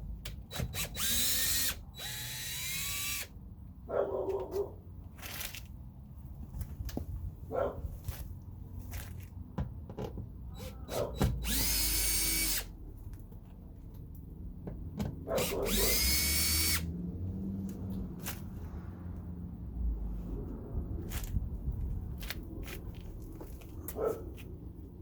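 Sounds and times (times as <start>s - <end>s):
power drill spinning: 0.4s - 3.3s, 10.6s - 12.7s, 15.4s - 16.9s.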